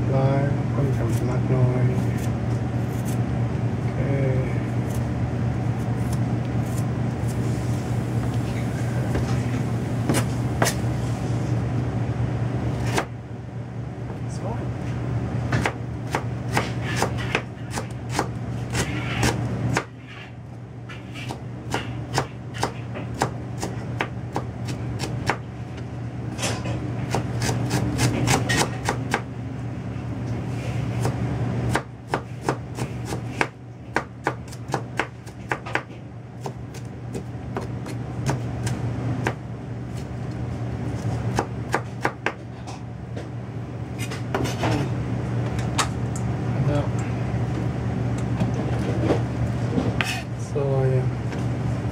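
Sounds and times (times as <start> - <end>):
knife chopping vegetables: 1.0 - 3.2, 5.9 - 7.4, 15.5 - 20.0, 21.0 - 25.4, 27.0 - 29.3, 31.0 - 40.1, 40.9 - 42.4.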